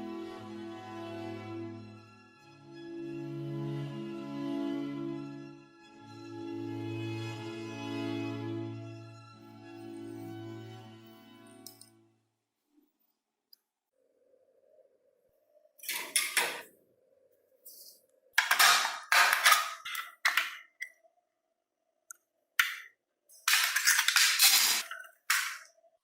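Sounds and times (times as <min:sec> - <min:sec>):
small parts and tools clattering: 0:17.8 - 0:21.0, 0:22.6 - 0:25.8.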